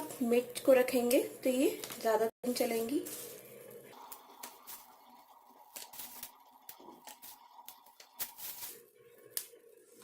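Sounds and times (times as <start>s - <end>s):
paper rustling: 5.7s - 6.4s.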